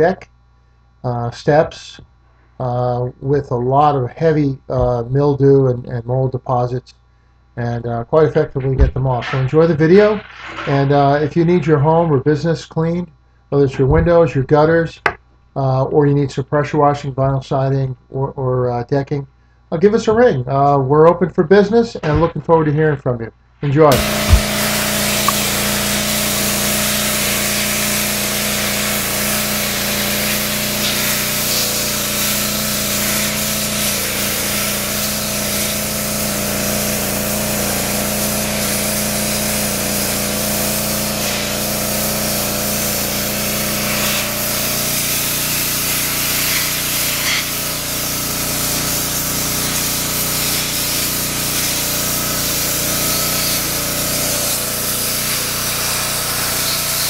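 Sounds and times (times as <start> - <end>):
pressure washer water jet: 23.9 - 57.0
pump hum: 23.9 - 57.0.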